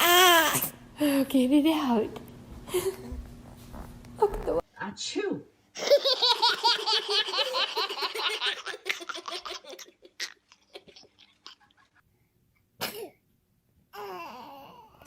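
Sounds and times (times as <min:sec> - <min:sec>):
baby sneeze: 0:12.8 - 0:13.2.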